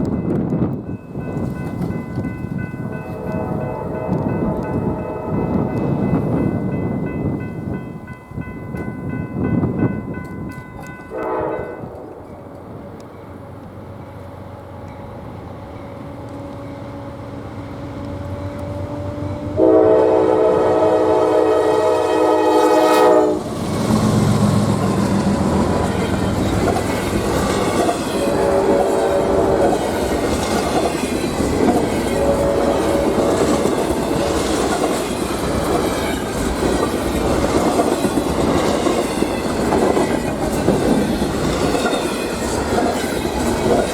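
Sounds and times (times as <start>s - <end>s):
diesel locomotive engines: 0.0s - 43.9s
train air horn: 3.1s - 5.7s, 11.1s - 12.2s, 18.0s - 25.8s, 28.1s - 29.9s, 31.9s - 34.4s
freight cars rumbling and clacking: 23.6s - 32.0s.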